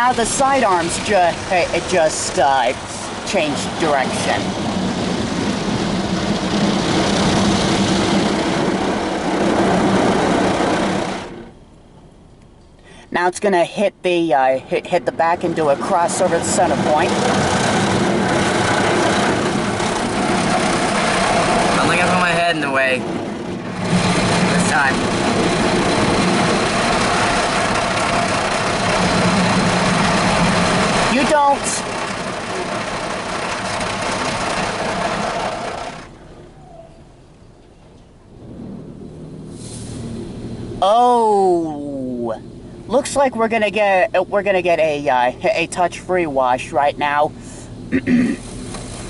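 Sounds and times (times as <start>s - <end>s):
low hum: 14.7s - 43.2s
car wash brushes scrubbing: 15.8s - 22.7s, 23.4s - 36.1s.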